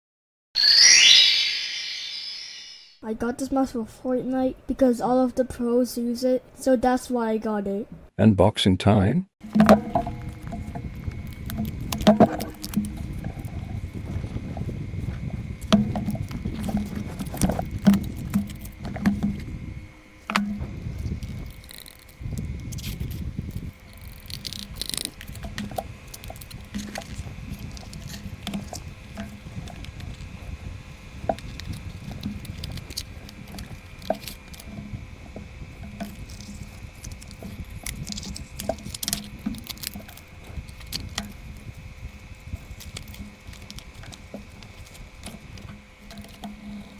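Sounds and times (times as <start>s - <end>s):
faint steady whine: 0.6s - 8.1s, 9.4s - 46.9s
handling rumble: 9.4s - 46.9s
packaging clicks and rustles: 9.4s - 46.9s.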